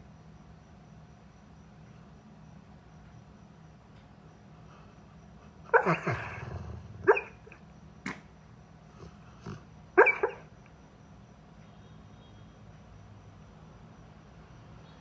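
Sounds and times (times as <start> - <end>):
dog barking in its sleep: 5.4 - 8.2, 8.9 - 10.6.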